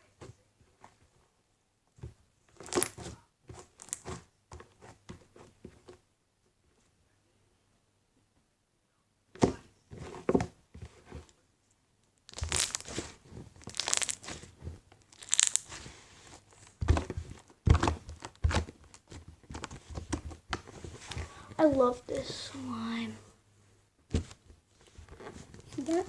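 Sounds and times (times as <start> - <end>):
wet crackling and popping: 2.6 - 3.0, 3.7 - 4.1, 12.2 - 15.8
hands squishing slime: 2.6 - 4.2, 12.3 - 20.3, 25.6 - 26.0.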